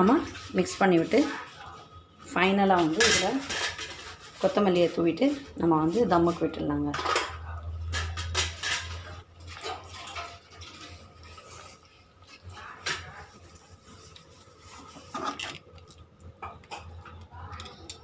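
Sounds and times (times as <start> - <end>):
metal spoon scraping a pan: 2.4 - 15.6.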